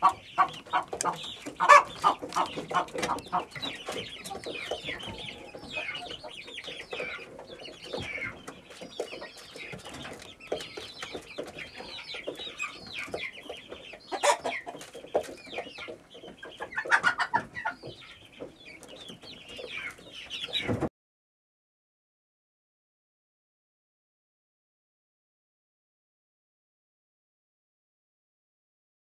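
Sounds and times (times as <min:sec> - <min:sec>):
chicken squawks: 0:00.0 - 0:06.3, 0:14.1 - 0:14.8, 0:16.6 - 0:17.9
chickens clucking: 0:00.0 - 0:20.9.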